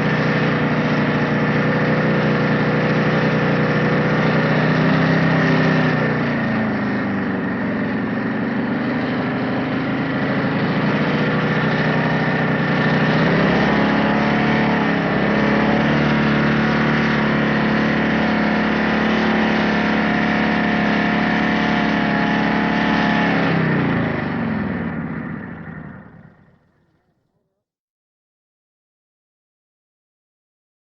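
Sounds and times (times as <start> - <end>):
motorcycle engine idling: 23.7 - 27.4.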